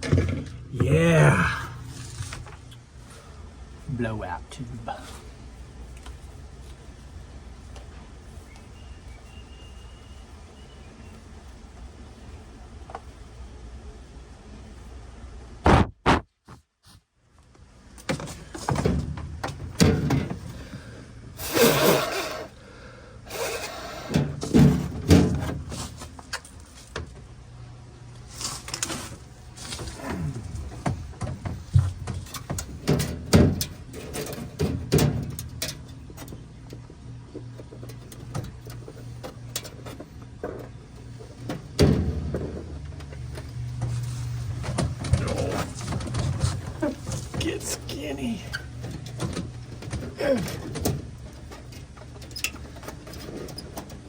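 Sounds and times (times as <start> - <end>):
plastic parts knocking and rustling: 28.5 - 47.9.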